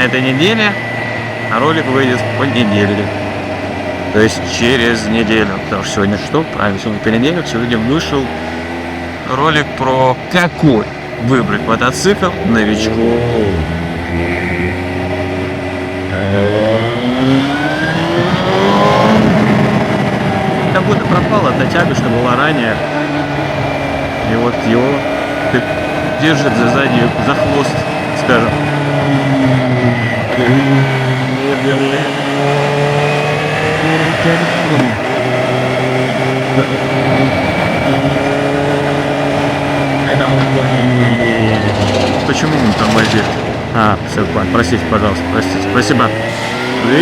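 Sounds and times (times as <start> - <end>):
motorcycle engine accelerating: 0.0 - 47.0
wind noise: 13.2 - 44.4.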